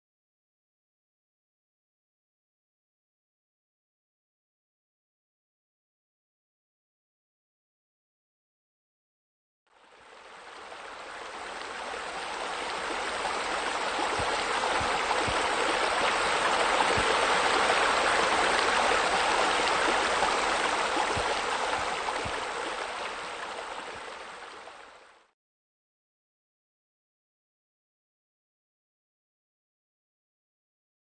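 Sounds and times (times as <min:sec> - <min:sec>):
running water splashing: 0:10.0 - 0:25.0.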